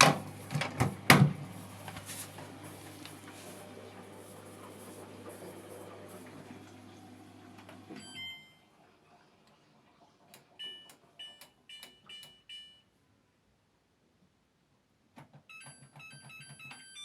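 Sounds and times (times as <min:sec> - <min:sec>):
washing machine beeps: 0:07.9 - 0:08.8, 0:10.4 - 0:13.0, 0:15.5 - 0:17.0.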